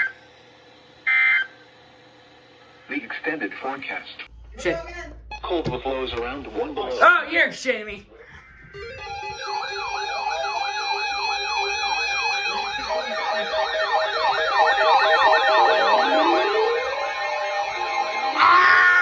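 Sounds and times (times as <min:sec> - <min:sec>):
electronic yelp siren: 0:01.0 - 0:01.6, 0:08.1 - 0:19.0
steady electronic tones: 0:04.2 - 0:19.0
lower rising tone: 0:04.3 - 0:07.0, 0:08.0 - 0:18.9.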